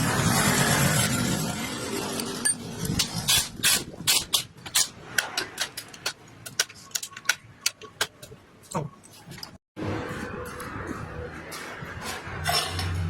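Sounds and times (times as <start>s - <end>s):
clicks and knocks of hard objects: 2.9s - 9.6s.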